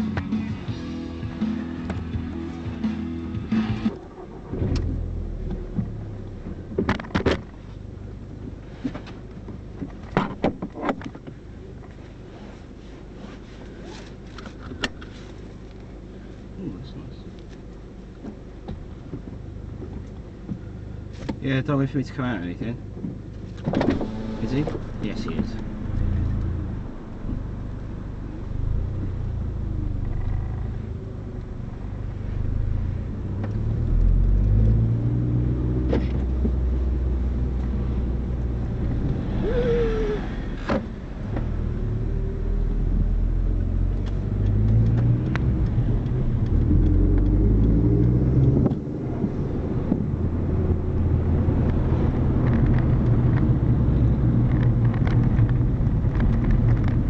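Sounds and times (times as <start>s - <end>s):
car engine drone: 0.0s - 57.0s.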